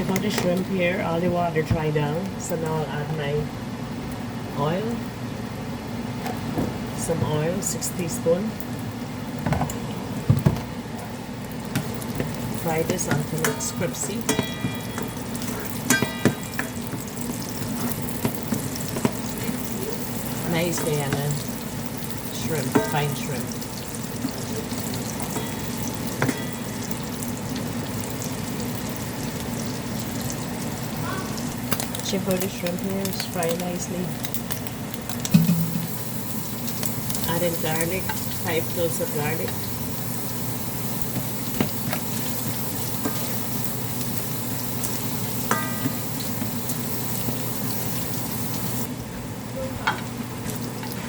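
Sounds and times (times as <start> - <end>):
shrimp sizzling in oil: 11.4 - 49.0.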